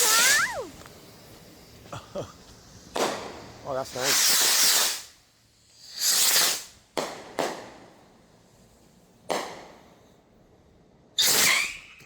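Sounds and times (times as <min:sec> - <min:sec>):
firework sharp cracks: 0:00.0 - 0:01.8, 0:02.4 - 0:08.4, 0:09.2 - 0:10.1, 0:11.2 - 0:12.0
firework rocket hissing whoosh: 0:00.0 - 0:10.1, 0:11.1 - 0:12.0.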